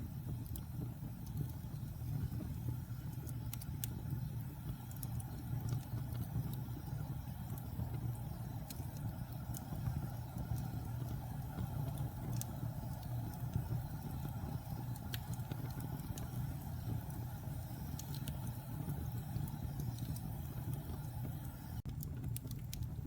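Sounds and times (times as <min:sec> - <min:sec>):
fire crackling and popping: 0:00.0 - 0:23.0
fire low rumble: 0:00.0 - 0:23.0.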